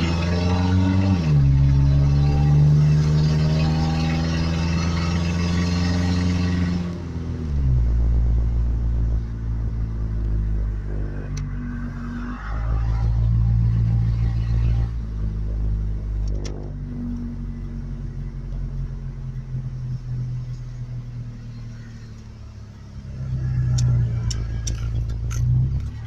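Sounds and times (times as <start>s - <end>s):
vehicle engine rumbling: 0.0s - 26.0s
sharp clicks: 23.7s - 26.0s.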